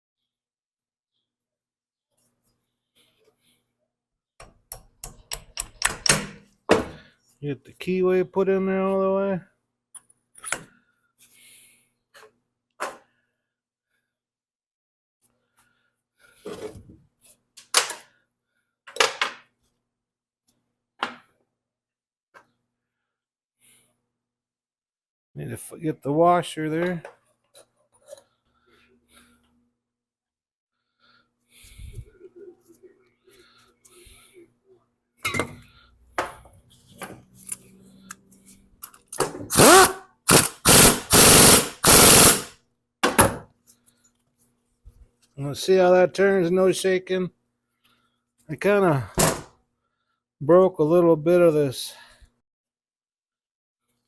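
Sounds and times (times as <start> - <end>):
impact wrench bursts: 39.5 - 42.5.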